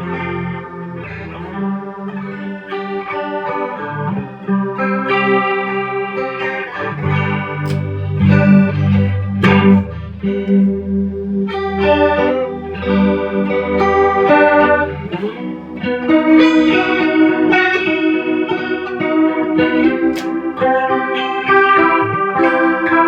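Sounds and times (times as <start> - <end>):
electric guitar with flanger: 0.0 - 23.0.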